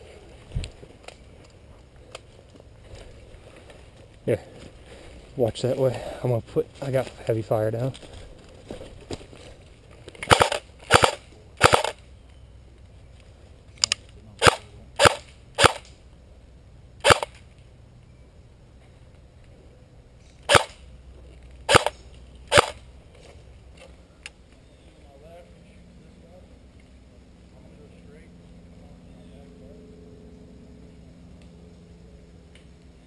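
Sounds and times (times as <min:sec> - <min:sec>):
airsoft gun firing: 0:10.2 - 0:12.0, 0:14.4 - 0:15.8, 0:17.0 - 0:17.4, 0:20.4 - 0:20.8, 0:21.7 - 0:22.8.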